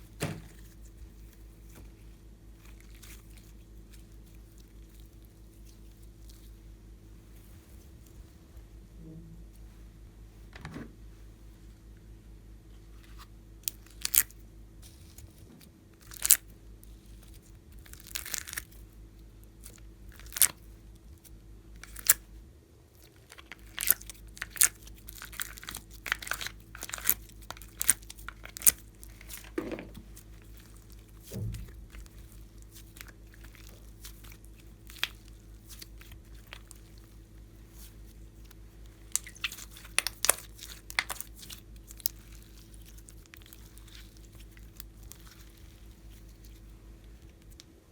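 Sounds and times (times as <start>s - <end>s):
faint hum: 0.0s - 47.9s
slime clicking and popping: 39.1s - 42.2s.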